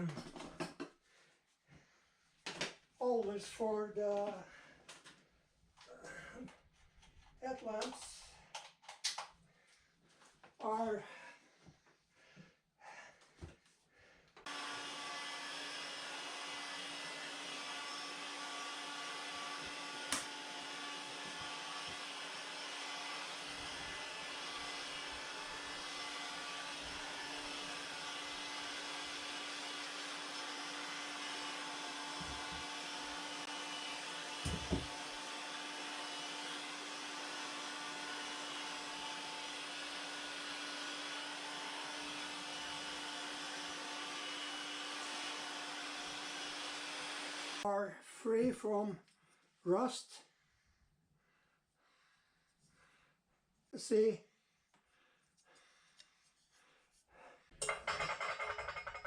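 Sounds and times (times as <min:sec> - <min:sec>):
electric motor whooshing hum: 0:14.5 - 0:47.6.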